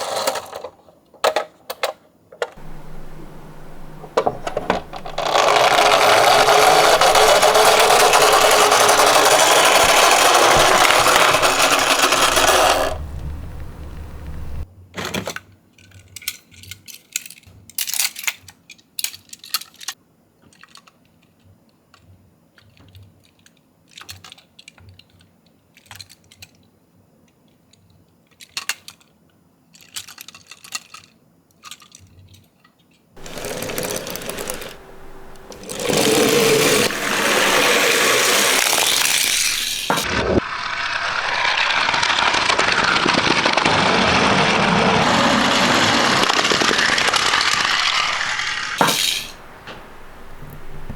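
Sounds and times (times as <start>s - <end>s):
toy cars clicking and rattling: 0.0s - 13.0s, 15.0s - 26.7s, 27.5s - 49.4s
loud continuous noise: 2.6s - 14.7s.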